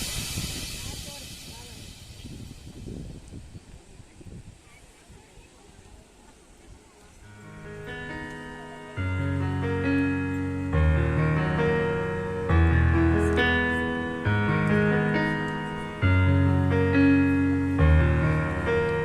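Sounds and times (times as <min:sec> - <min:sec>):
slow piano chords: 0:07.2 - 0:19.0.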